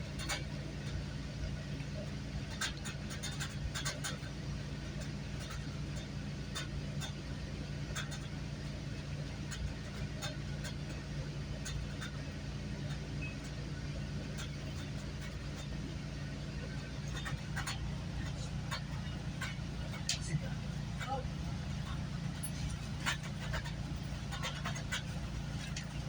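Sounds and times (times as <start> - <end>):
train rumble and hum: 0.0 - 26.0
wheel clicks and rattles: 7.9 - 26.0.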